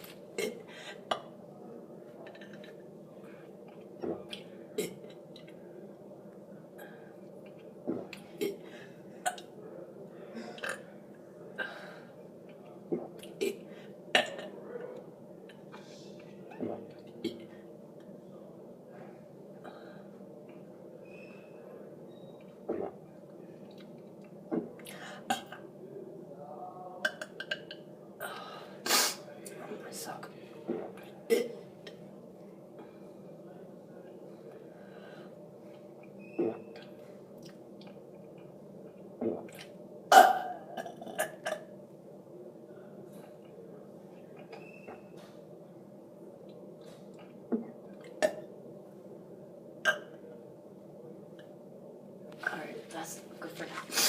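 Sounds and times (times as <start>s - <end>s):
steady low hum: 0.0s - 54.0s
soft gulps and throat clicks: 2.2s - 5.7s, 6.7s - 9.6s, 10.3s - 11.8s, 12.4s - 18.2s, 22.4s - 25.7s, 27.0s - 28.4s, 30.6s - 33.0s, 35.7s - 41.8s, 46.4s - 48.5s
person breathing: 34.7s - 35.4s.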